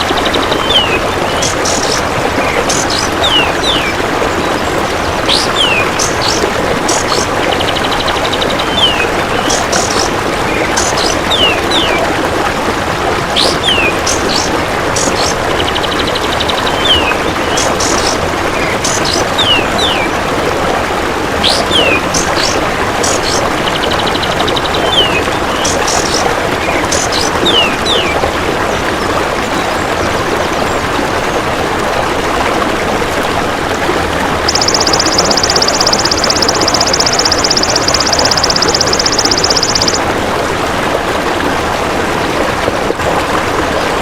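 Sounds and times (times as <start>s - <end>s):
loud steady rushing noise: 0.0s - 28.7s
bird whistled notes and chirps: 34.5s - 40.0s.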